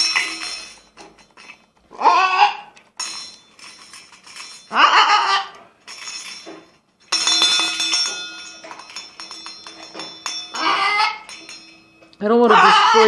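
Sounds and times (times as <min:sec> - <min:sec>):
macaw squawk: 0:12.5 - 0:13.0.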